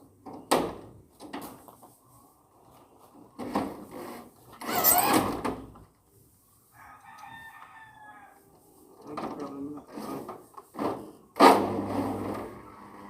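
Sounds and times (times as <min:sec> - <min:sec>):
rooster crowing: 0:06.7 - 0:08.4.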